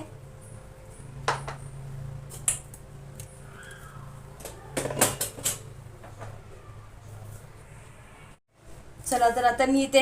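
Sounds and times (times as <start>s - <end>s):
kitchen things clattering: 4.4s - 6.4s.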